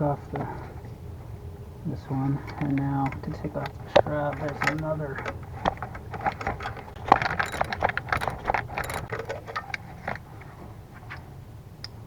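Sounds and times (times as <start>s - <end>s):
metallic rattles: 2.3s - 10.2s
ratchet wrench clicking: 3.1s - 9.2s.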